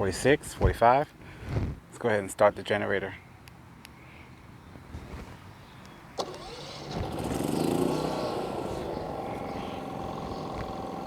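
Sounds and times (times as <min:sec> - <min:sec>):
generator engine running: 0:06.2 - 0:11.0.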